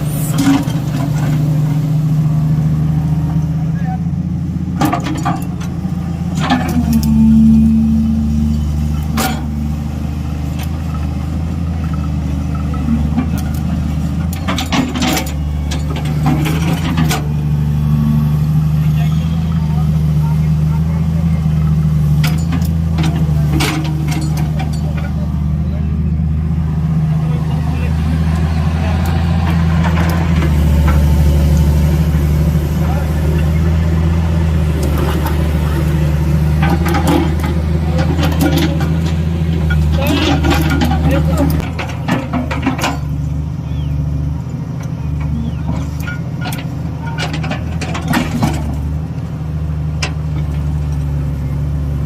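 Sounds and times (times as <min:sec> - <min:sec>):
excavator diesel engine droning: 0:00.0 - 0:52.0
metallic clanks and knocks: 0:04.8 - 0:09.7, 0:11.8 - 0:17.4, 0:22.1 - 0:25.3, 0:34.8 - 0:43.3, 0:44.8 - 0:48.9.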